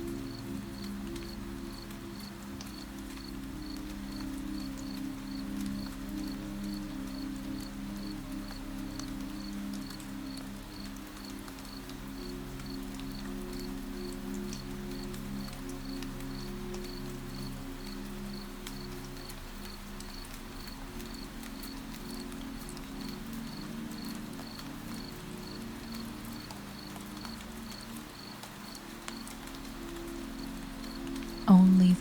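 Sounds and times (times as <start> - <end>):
rain patter: 0.0 - 32.0
soft music pad: 0.0 - 32.0
cricket chirping: 23.0 - 26.0, 26.8 - 29.3.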